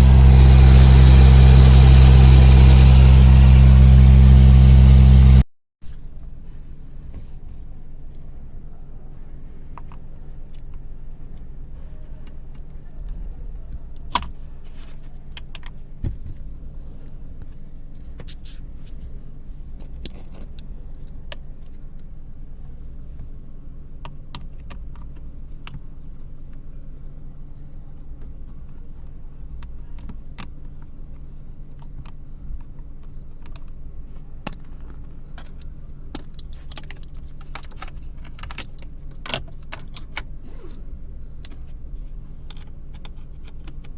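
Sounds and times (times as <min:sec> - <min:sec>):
blower motor humming: 0:00.0 - 0:05.5.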